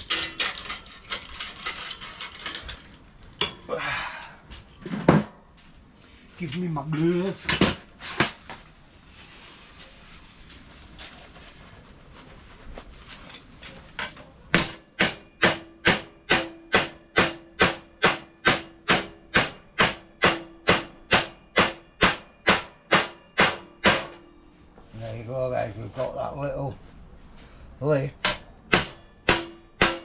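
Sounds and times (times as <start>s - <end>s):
hammer striking sheet metal: 14.5s - 24.4s, 28.2s - 30.0s.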